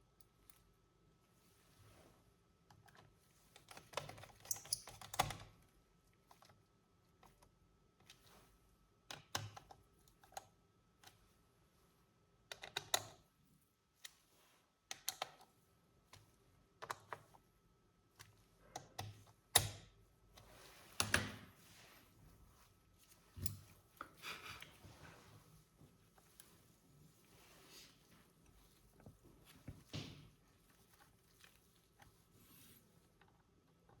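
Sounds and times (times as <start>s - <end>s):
laptop parts clicking and rattling: 2.8s - 5.5s.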